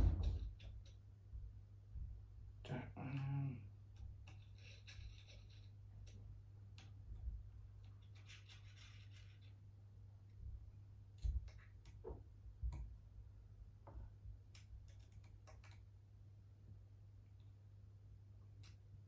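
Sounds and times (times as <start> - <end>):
small metal parts clicking: 4.0 - 6.2, 7.8 - 9.5.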